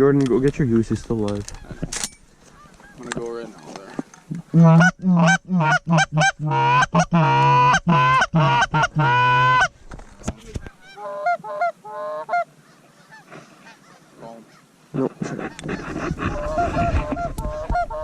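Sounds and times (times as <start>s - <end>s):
distant geese honking: 1.5s - 9.7s, 10.8s - 18.0s
goose call honks: 4.5s - 9.7s.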